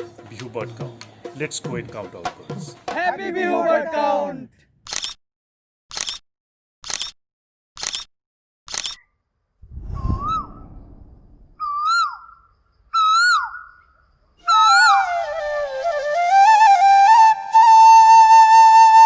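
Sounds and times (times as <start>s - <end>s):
sharp clicks: 4.9s - 5.2s, 5.9s - 6.2s, 6.8s - 7.2s, 7.8s - 8.1s, 8.7s - 9.0s.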